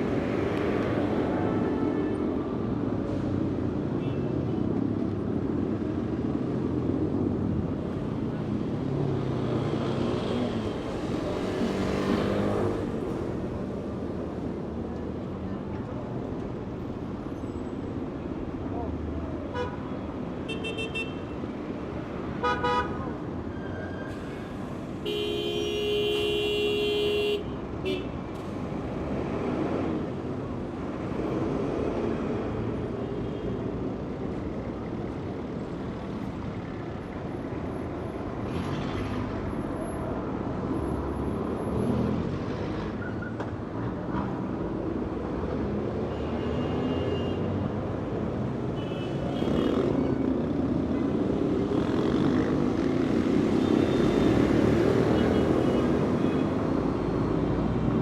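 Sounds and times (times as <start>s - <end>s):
city street traffic: 0.0s - 58.0s.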